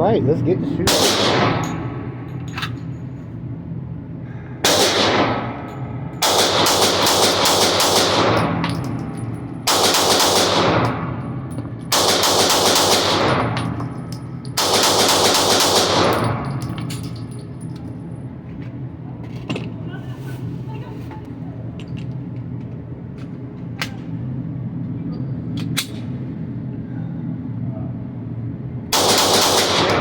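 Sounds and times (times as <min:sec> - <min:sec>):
rapid pistol shots: 0:00.9 - 0:01.7, 0:04.6 - 0:05.6, 0:06.2 - 0:08.6, 0:09.6 - 0:11.2, 0:11.9 - 0:13.6, 0:14.6 - 0:16.4, 0:28.9 - 0:30.0.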